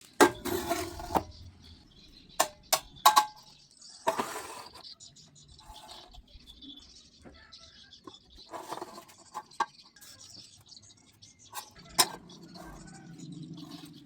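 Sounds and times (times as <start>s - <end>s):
metal scrape: 0.0s - 1.5s, 2.4s - 4.9s, 8.4s - 10.3s, 11.5s - 14.0s
steel workpieces knocking: 0.0s - 1.5s, 2.3s - 4.8s, 8.0s - 9.9s, 11.6s - 13.0s.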